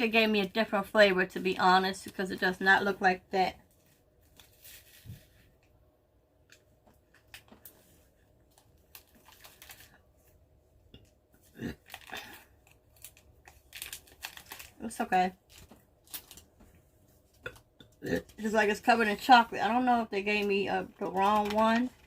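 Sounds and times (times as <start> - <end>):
small crunches: 6.5 - 10.2, 11.0 - 16.6
plastic wrapper crinkling: 6.5 - 10.3, 11.8 - 16.6, 20.3 - 22.0.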